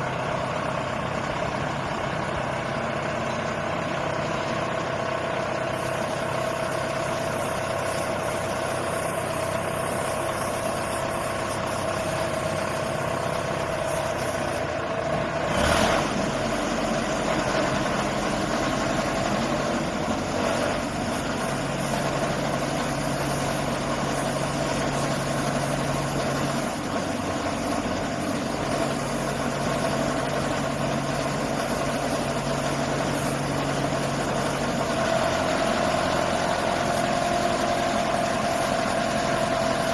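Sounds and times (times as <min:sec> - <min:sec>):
drilling rig engine running: 0:00.0 - 0:39.9.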